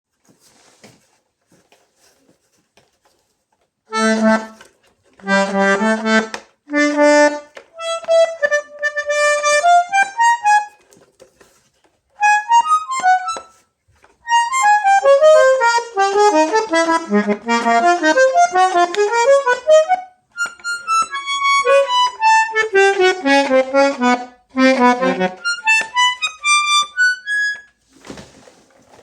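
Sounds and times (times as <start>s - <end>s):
bandoneon playing: 3.9s - 10.8s, 12.2s - 13.6s, 14.2s - 27.8s.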